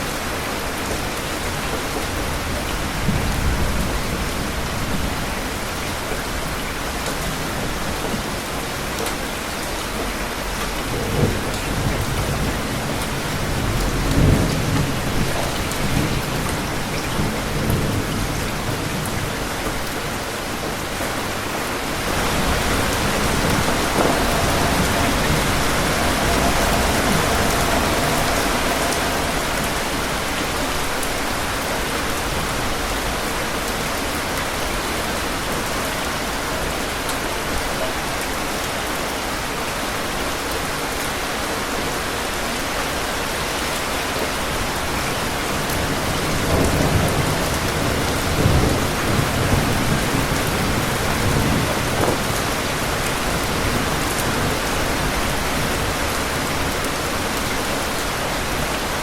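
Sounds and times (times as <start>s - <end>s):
heavy rain falling: 0.0s - 59.0s
thunder rumbling: 9.6s - 37.6s, 44.5s - 59.0s.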